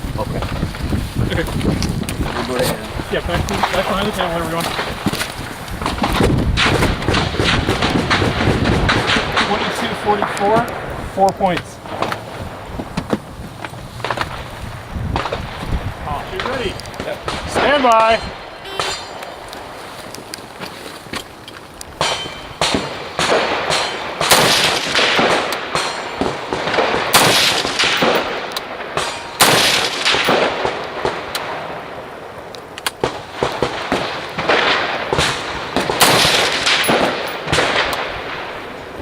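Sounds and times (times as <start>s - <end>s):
rifle shots echoing: 5.8s - 12.3s, 16.2s - 19.8s, 22.0s - 32.4s, 33.0s - 38.8s.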